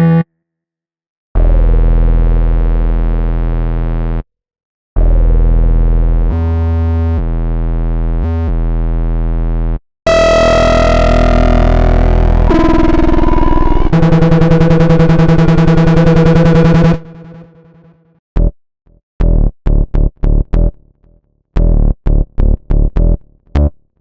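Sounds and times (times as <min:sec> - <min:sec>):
deep buzzy synth bass: 0:01.4 - 0:04.2, 0:05.0 - 0:17.8, 0:21.6 - 0:23.7
bright synth with falling sweep: 0:10.1 - 0:17.6.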